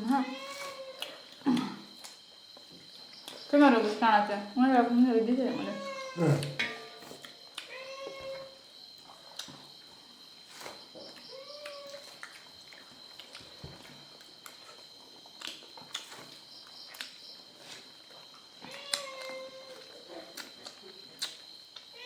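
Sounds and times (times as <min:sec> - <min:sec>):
cat meowing: 0:05.6 - 0:06.4, 0:07.7 - 0:08.5, 0:18.7 - 0:19.7.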